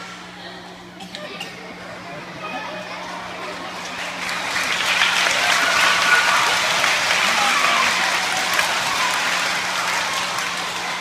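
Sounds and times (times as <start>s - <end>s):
voices calling out: 0.1s - 11.0s
audience applauding: 3.3s - 11.0s.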